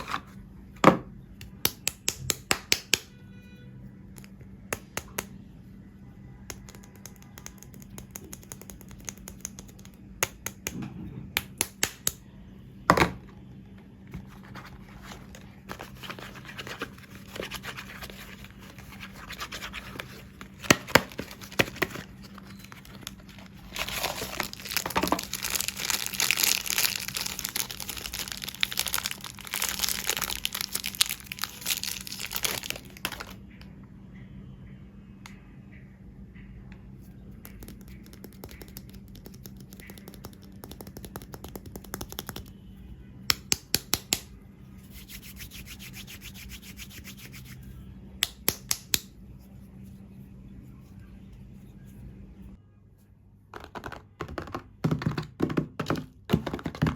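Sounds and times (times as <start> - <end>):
sharp taps and clicks: 6.5 - 10.8
wrapping crinkling and tearing: 15.7 - 33.4.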